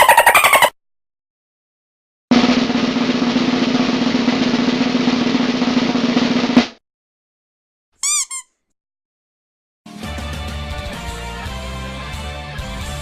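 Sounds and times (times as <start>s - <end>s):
chirping tones: 0.0s - 0.7s
loud drum hit: 2.3s - 6.8s
snare drum roll: 2.3s - 6.8s.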